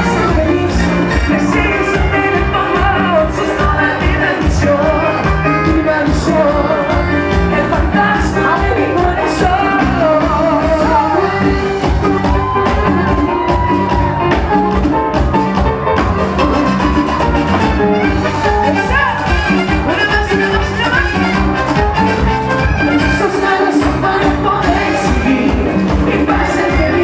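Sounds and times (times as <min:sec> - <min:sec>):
live latin pop band: 0:00.0 - 0:27.0
person singing: 0:00.0 - 0:27.0.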